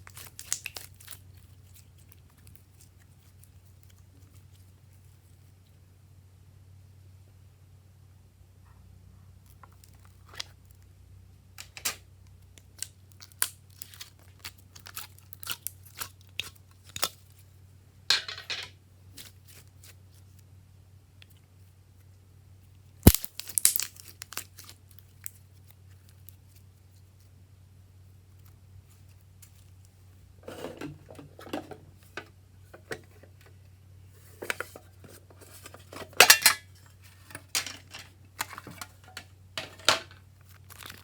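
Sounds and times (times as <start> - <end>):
sticky slime clicks and crackles: 0.0 - 2.6, 23.0 - 25.4
crinkling rustle: 0.0 - 5.8, 21.3 - 27.4, 28.0 - 41.0
faint low hum: 0.0 - 41.0
sharp snap: 23.1 - 23.9.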